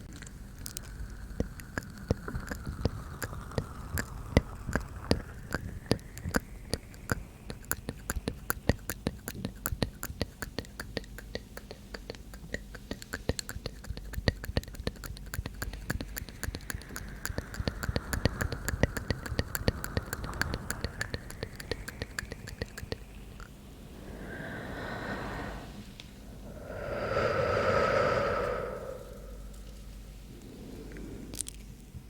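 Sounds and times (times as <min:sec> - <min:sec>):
wet mouth clicks: 0:00.0 - 0:30.0, 0:30.9 - 0:31.7
breathy exhales into microphone: 0:23.5 - 0:31.6.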